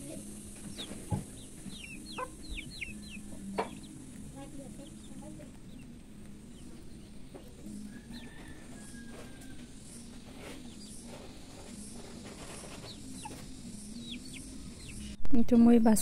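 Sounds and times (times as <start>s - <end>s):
low steady hum: 0.0s - 16.0s
high falling bird chirps: 0.6s - 9.2s.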